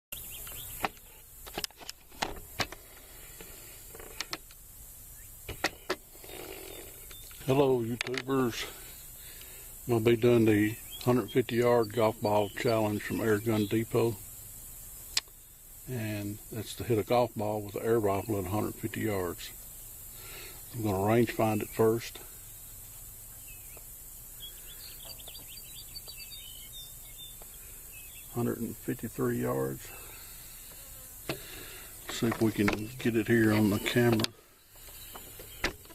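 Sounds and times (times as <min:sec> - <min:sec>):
bird chirping: 0:00.1 - 0:01.2, 0:05.1 - 0:05.5, 0:06.2 - 0:16.2, 0:17.4 - 0:35.9
steady hiss: 0:00.2 - 0:35.9
clicks and light knocks: 0:08.0 - 0:08.3, 0:33.6 - 0:35.9
faint ticks: 0:09.2 - 0:09.6, 0:14.9 - 0:15.4.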